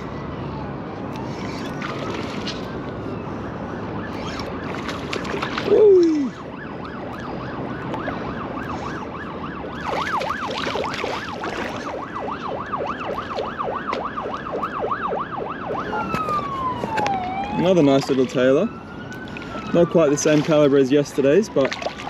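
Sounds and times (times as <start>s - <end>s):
fishing reel whirring: 4.2s - 4.8s.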